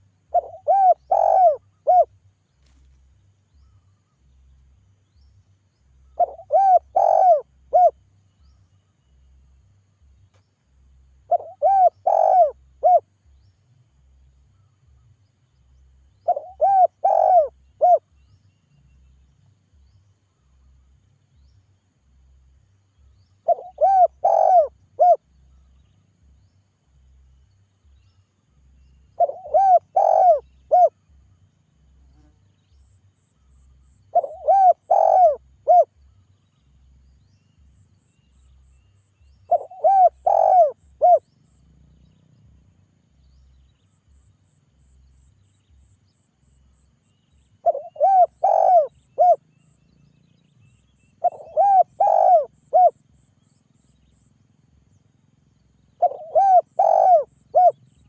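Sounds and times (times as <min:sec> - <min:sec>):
dove cooing: 0:00.0 - 0:02.1, 0:06.2 - 0:08.0, 0:11.3 - 0:13.1, 0:16.2 - 0:18.0, 0:23.4 - 0:25.2, 0:29.2 - 0:31.0, 0:34.1 - 0:35.9, 0:39.5 - 0:41.3, 0:47.6 - 0:49.5, 0:51.2 - 0:53.3, 0:56.0 - 0:58.0.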